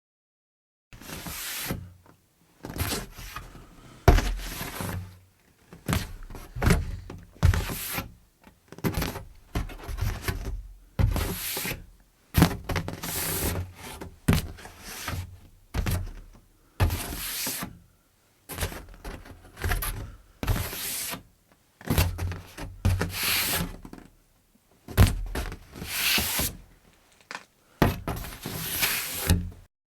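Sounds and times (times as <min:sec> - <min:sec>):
board scraping against easel: 0:01.0 - 0:01.9, 0:02.6 - 0:08.2, 0:18.5 - 0:21.3, 0:21.9 - 0:24.1, 0:25.3 - 0:29.6.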